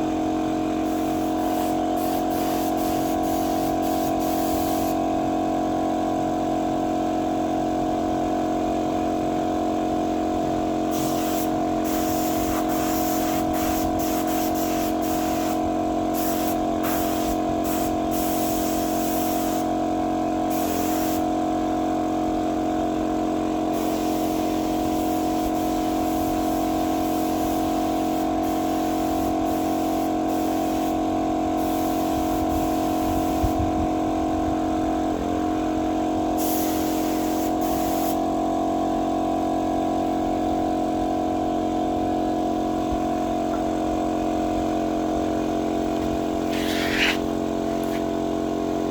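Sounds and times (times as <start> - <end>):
air compressor humming: 0.0 - 48.9
spray gun hissing bursts: 0.8 - 5.1, 10.9 - 19.8, 20.5 - 21.3, 23.7 - 33.6, 36.4 - 38.3, 46.4 - 48.1.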